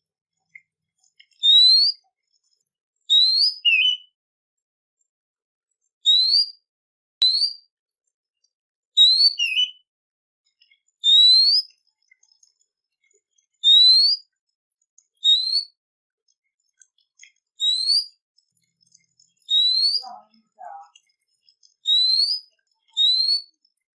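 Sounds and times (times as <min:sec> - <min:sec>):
songbird whistled notes: 0:01.4 - 0:02.0, 0:03.1 - 0:04.2, 0:06.1 - 0:06.6, 0:07.2 - 0:07.7, 0:09.0 - 0:09.8, 0:13.6 - 0:14.3, 0:15.2 - 0:15.8, 0:17.6 - 0:18.2, 0:19.5 - 0:20.3, 0:21.8 - 0:23.6.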